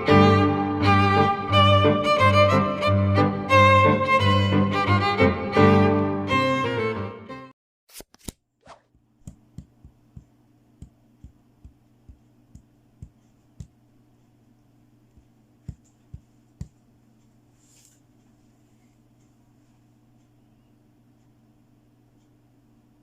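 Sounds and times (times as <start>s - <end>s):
faint steady hum: 8.8s - 23.0s.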